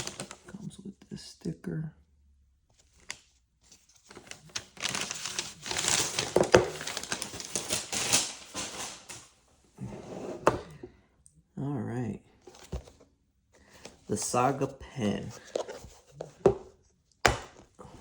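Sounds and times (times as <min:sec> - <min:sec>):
packaging crinkling and rustling: 0:00.0 - 0:00.5, 0:02.8 - 0:09.4.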